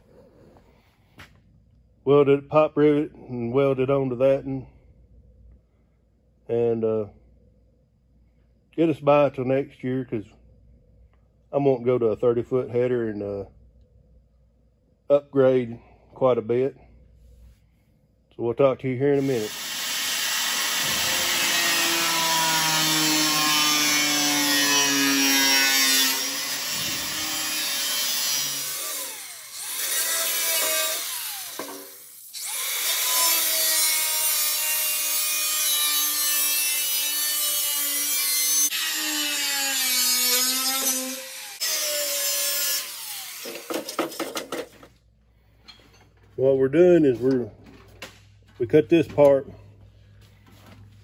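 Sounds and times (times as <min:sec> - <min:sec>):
power tool cutting sheet metal: 0:19.2 - 0:44.7.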